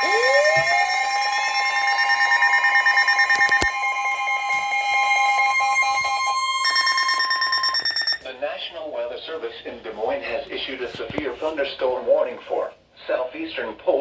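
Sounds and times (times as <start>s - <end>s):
loud steady alarm tone: 0.0s - 8.3s.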